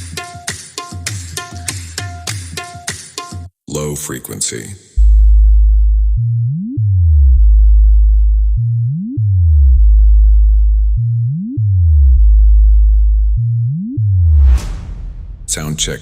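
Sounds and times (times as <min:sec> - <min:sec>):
bass test tone sweeping in pitch: 0:05.0 - 0:15.6.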